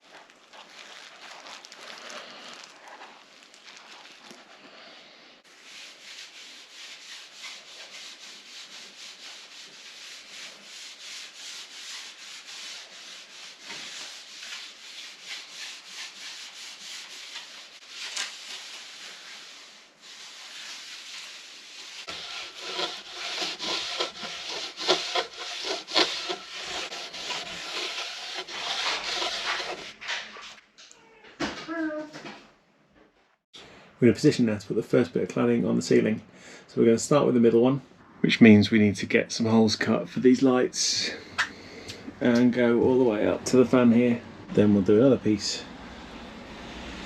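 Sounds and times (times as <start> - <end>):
rubbing strokes on wooden boards: 5.5 - 30.6.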